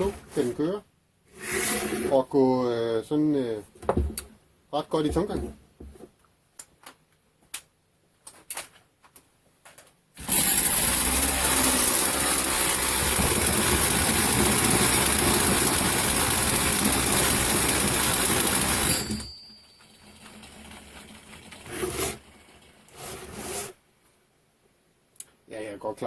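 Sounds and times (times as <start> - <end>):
chainsaw engine running: 10.2 - 19.2.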